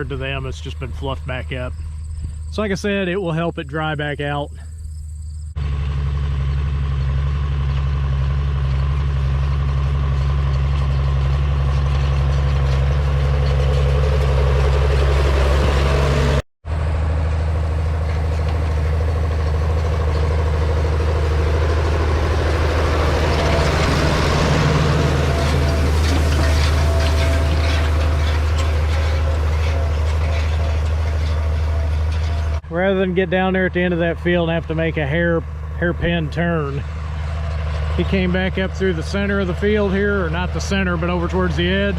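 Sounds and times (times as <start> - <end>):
tractor engine running: 0.0 - 41.9.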